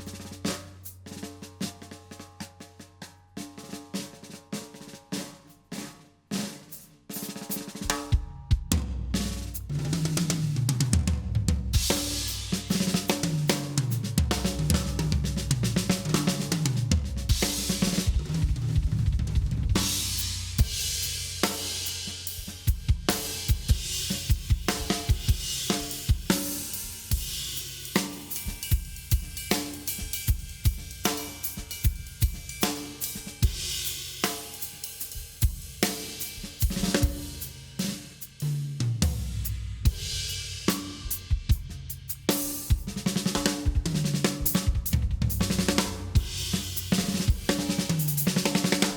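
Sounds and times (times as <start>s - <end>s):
drum kit playing: 0.0s - 2.9s, 6.3s - 48.9s.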